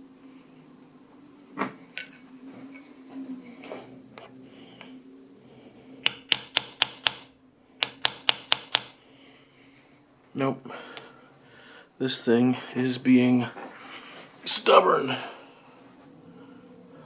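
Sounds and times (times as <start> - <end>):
hammer tapping on metal: 6.0 - 7.2, 7.8 - 9.0.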